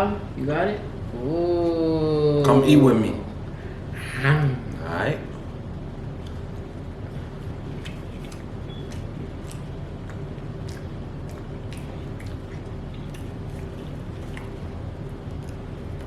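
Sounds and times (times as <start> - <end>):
steady low hum: 0.0 - 16.0
wet chewing clicks and smacks: 6.1 - 16.0.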